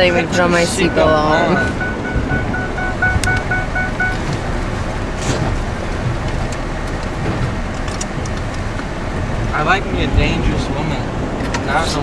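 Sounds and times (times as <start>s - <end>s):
seatbelt warning chime beeping: 0.0s - 6.6s
engine and road noise in cabin: 0.0s - 12.0s.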